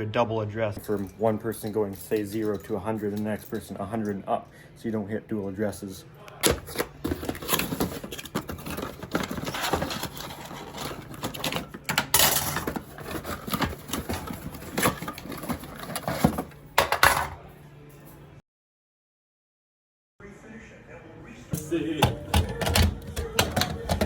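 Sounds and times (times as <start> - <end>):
small hard objects clattering: 6.4 - 16.5.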